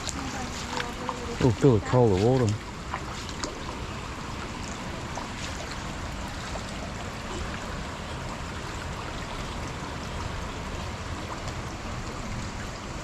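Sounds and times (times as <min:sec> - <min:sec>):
faint small splashes: 0:00.0 - 0:13.0
floodwater running and trickling: 0:00.0 - 0:13.0.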